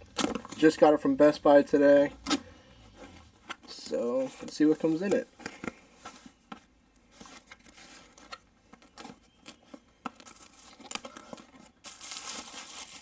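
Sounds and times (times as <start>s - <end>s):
packaging tearing and rustling: 0.0s - 0.8s, 7.2s - 13.0s.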